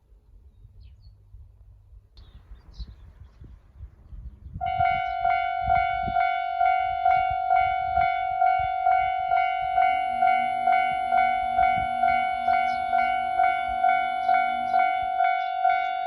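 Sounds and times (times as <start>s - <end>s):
level crossing alarm dinging: 4.6s - 16.0s
lower alarm tone: 4.6s - 16.0s.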